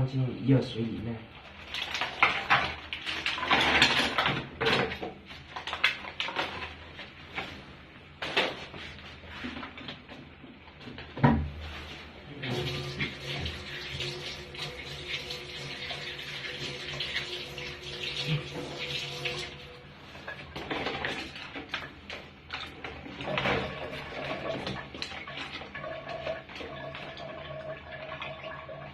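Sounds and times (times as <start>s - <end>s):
water running into a container: 1.4s - 6.9s, 11.8s - 28.9s
kitchen clatter: 1.7s - 6.9s, 12.4s - 28.3s.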